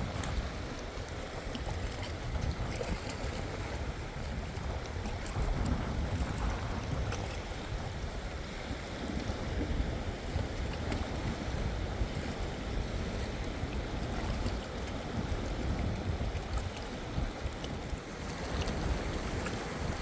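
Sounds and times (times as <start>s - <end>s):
strong wind on microphone: 0.0s - 20.0s
waves washing: 0.0s - 20.0s.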